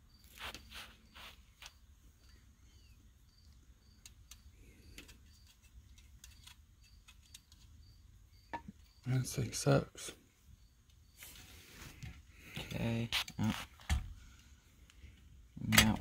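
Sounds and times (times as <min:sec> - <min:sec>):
faint high chirp: 0:02.2 - 0:03.4.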